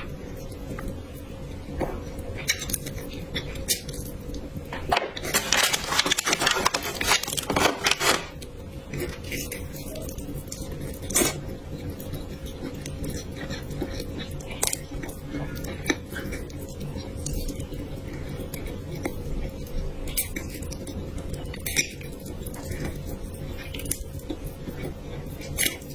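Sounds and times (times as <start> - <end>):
chewing and wet mouth noises: 8.9 - 25.9.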